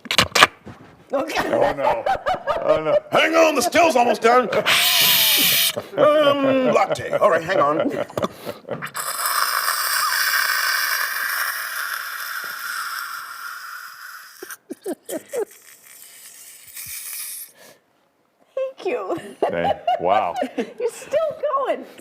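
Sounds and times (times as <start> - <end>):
man imitating steam hiss: 4.6 - 5.8, 8.9 - 17.8
squeaky mouth gurgles: 4.6 - 5.8, 8.8 - 17.5.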